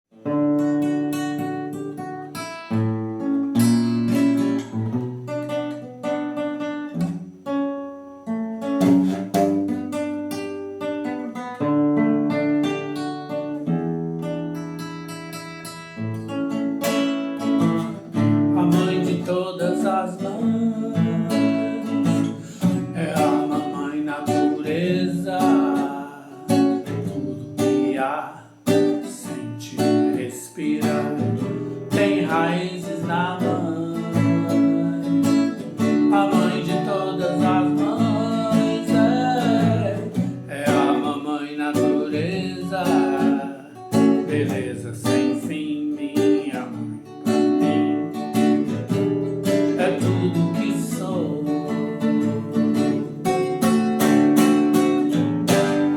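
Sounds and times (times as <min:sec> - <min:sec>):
fingerpicked acoustic guitar: 0:00.1 - 0:55.9
person singing wordlessly: 0:17.8 - 0:53.3.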